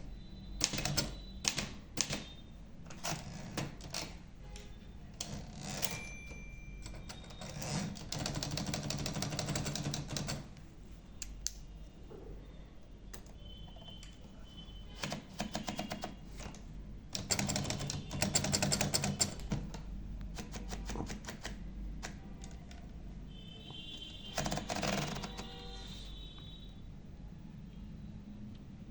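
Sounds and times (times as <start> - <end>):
manual typewriter keystrokes: 0.0 - 4.3, 5.0 - 10.6, 14.9 - 23.0, 23.9 - 25.8.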